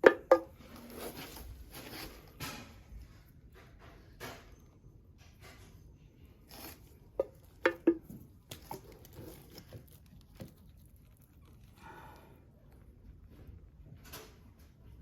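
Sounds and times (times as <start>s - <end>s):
sharp knocks and clacks: 7.2s - 8.2s.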